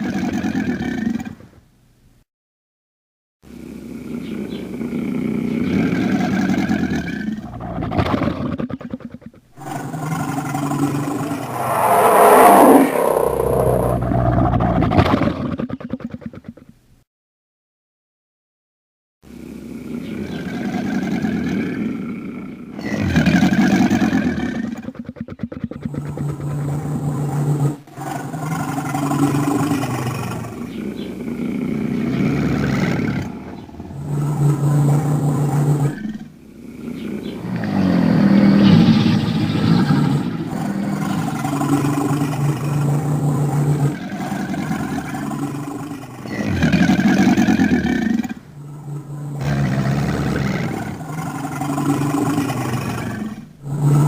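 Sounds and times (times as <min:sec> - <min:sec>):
low droning growl: 0:09.6 - 0:15.0, 0:25.8 - 0:54.0
loud roars and growls: 0:09.6 - 0:15.5, 0:19.3 - 0:24.9, 0:25.8 - 0:54.0.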